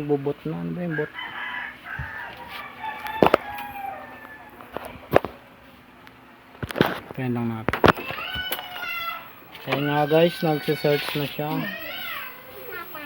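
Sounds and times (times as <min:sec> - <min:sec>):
rooster crowing: 0:00.8 - 0:05.0, 0:08.1 - 0:13.0.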